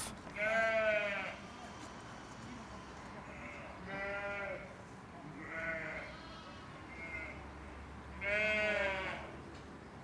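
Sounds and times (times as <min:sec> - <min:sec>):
sheep bleating: 0:00.4 - 0:01.4, 0:03.3 - 0:04.7, 0:05.4 - 0:07.4, 0:08.2 - 0:09.3.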